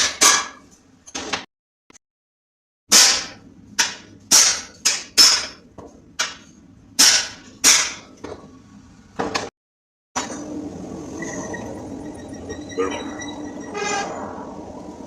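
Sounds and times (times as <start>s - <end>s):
hammer striking metal: 2.9s - 5.6s, 7.0s - 8.1s.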